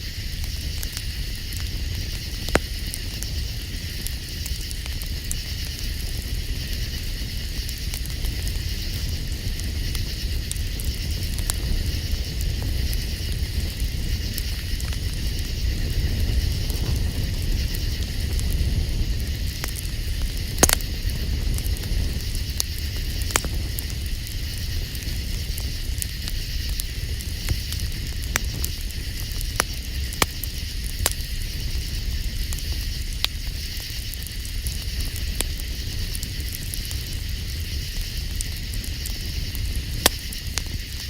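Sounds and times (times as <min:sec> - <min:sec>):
campfire crackling and popping: 0:00.0 - 0:41.0.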